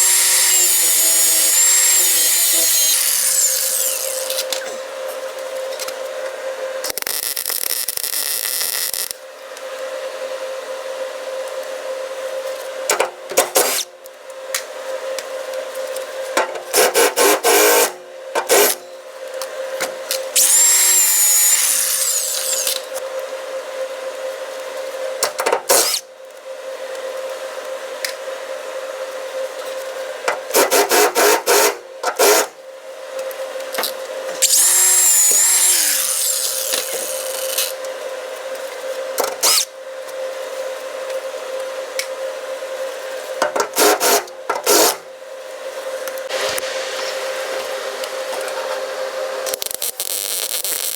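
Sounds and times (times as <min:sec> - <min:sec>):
power tool whining: 0:00.0 - 0:05.2, 0:20.1 - 0:23.0, 0:34.4 - 0:37.9, 0:39.2 - 0:39.7
welding arc crackling: 0:06.8 - 0:09.2, 0:34.5 - 0:37.7, 0:49.4 - 0:50.9
steady hum: 0:44.9 - 0:50.9.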